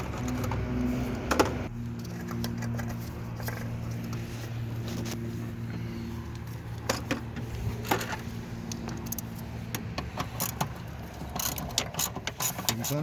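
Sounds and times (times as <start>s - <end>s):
metal tools clinking: 10.1s - 13.0s.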